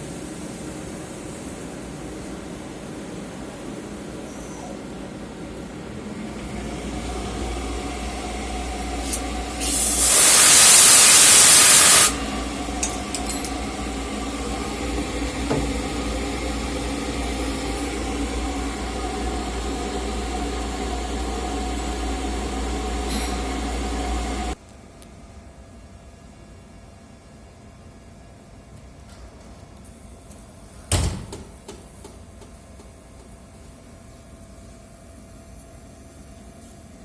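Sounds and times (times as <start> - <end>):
cnc machine humming: 5.0 - 9.7, 11.6 - 24.6
loud hiss: 9.0 - 12.7.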